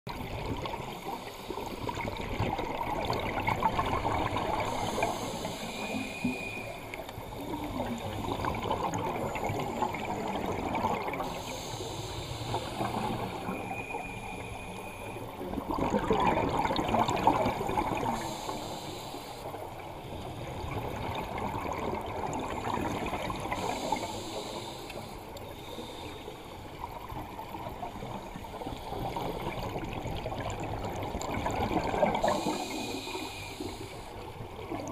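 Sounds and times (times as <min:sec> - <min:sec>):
regulator hiss underwater: 0:02.6 - 0:34.4
gurgling exhaust bubbles: 0:15.5 - 0:18.2.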